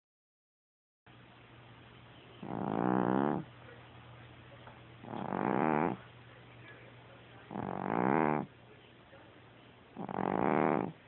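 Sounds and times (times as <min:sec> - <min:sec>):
low steady hum: 0:01.1 - 0:07.8.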